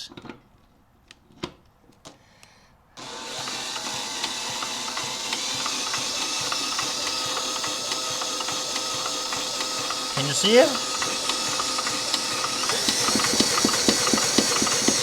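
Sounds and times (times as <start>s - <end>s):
machine running with ticking rattle: 3.8s - 15.0s.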